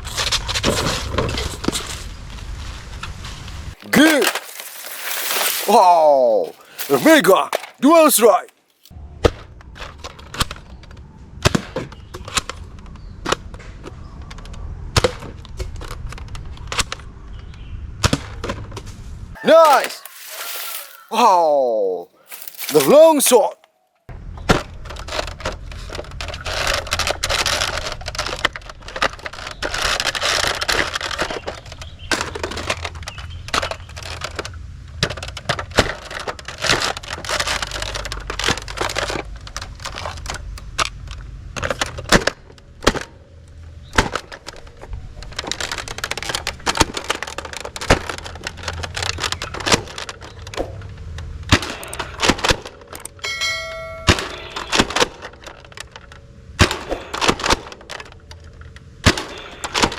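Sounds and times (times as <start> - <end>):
rustling: 0.0 - 7.8, 19.6 - 21.1, 22.0 - 22.9.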